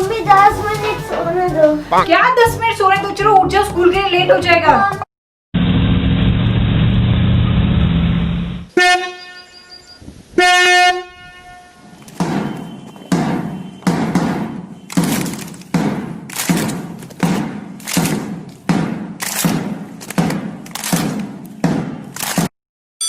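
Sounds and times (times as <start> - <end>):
vehicle horn honking: 8.7 - 12.0
regular thumps: 12.0 - 22.5.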